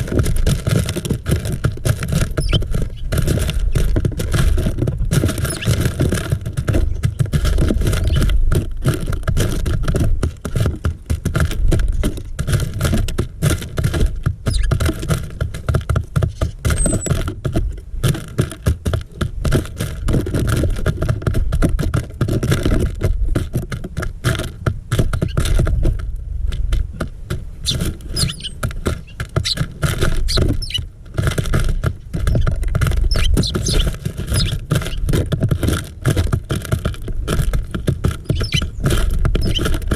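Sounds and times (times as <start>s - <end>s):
birds pecking on plastic feeder: 0.0s - 39.9s
faint high bird chirps: 28.2s - 29.6s, 30.3s - 30.8s, 33.1s - 33.8s, 38.3s - 38.6s.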